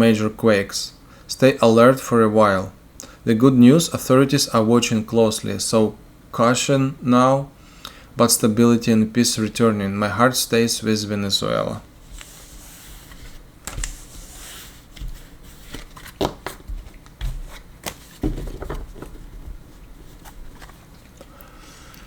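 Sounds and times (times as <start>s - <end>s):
cards being shuffled: 12.0s - 21.3s
cards knocking on table: 16.2s - 19.3s.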